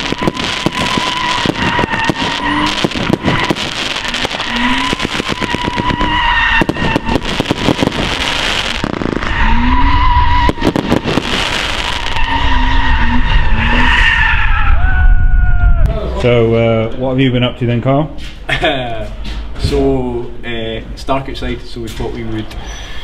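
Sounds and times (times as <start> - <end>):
sharp cracks and pops: 0.0 - 12.3
high-pitched tyre squeal: 0.0 - 15.6, 22.5 - 23.0.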